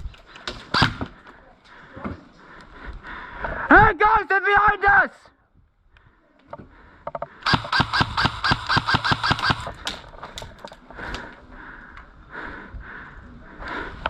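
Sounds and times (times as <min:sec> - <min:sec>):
airsoft gun shots: 0:00.7 - 0:01.1, 0:07.4 - 0:10.0.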